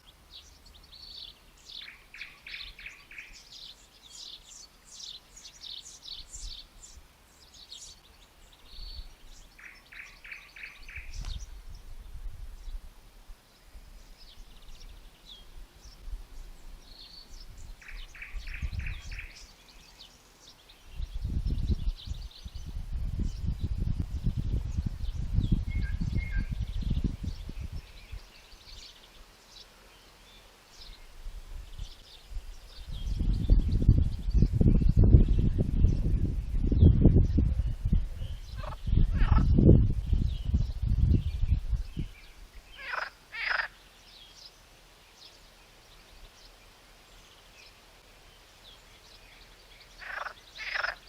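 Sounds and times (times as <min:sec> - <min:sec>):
faint steady hiss: 0:00.0 - 0:36.7, 0:39.7 - 0:51.0
birds chirping and calling: 0:00.1 - 0:11.9, 0:13.9 - 0:47.8, 0:48.6 - 0:51.0
wind buffeting microphone: 0:10.6 - 0:13.1, 0:13.7 - 0:19.4, 0:20.8 - 0:28.8, 0:30.8 - 0:42.8.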